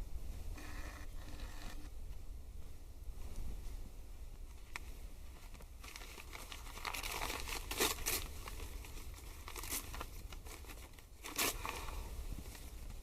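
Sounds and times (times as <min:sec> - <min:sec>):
paper crumpling and tearing: 0:05.5 - 0:12.0.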